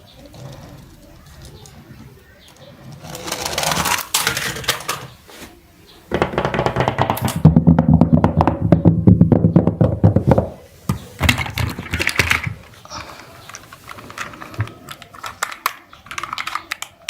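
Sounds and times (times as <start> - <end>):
plastic toys clicking and clattering: 0.0 - 5.2, 6.1 - 7.6, 10.9 - 17.0.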